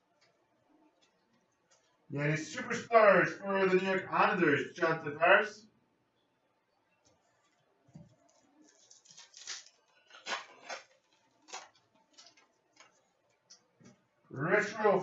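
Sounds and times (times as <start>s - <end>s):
cards scraping and clicking: 8.1s - 13.0s.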